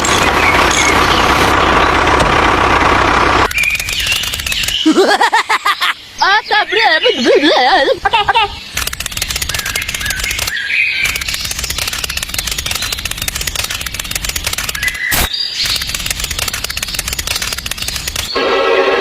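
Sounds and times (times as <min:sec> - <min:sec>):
fast clicking rattle: 0:03.0 - 0:04.9, 0:08.7 - 0:18.4.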